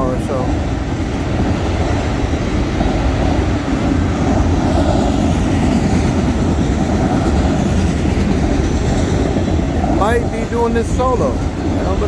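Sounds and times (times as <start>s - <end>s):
freight train wheels rumbling on track: 0.0s - 12.0s.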